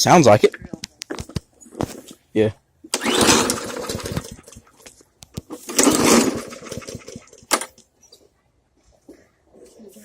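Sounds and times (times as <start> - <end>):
lawn mower engine cranking: 2.9 - 7.8.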